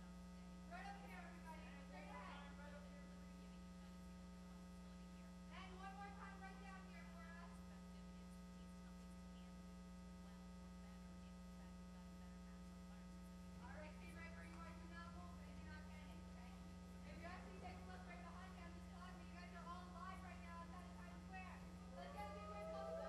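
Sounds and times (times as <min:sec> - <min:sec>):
electrical mains hum: 0:00.0 - 0:23.0
faint distant voice: 0:00.0 - 0:23.0.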